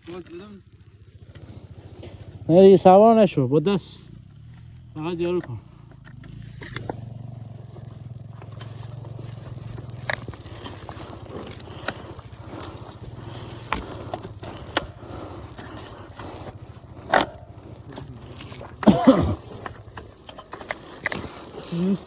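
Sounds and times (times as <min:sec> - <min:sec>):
motorcycle engine running: 0:00.0 - 0:22.0
sharp clicks and knocks: 0:04.5 - 0:07.2.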